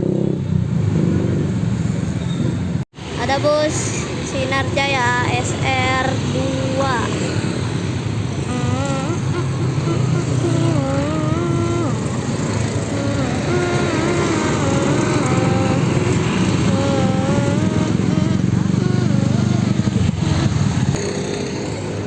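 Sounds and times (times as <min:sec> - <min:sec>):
coach diesel engine rumbling: 0:08.3 - 0:21.0.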